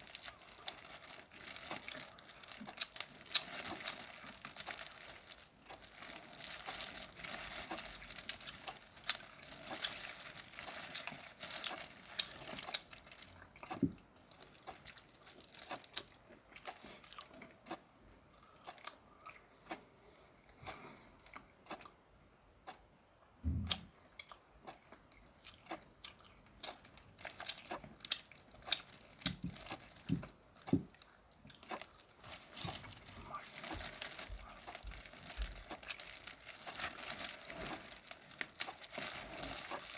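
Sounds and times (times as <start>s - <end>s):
shrimp shell crackling: 0.0s - 16.8s, 26.6s - 39.9s
chewing and biting: 0.0s - 22.0s, 23.7s - 39.9s.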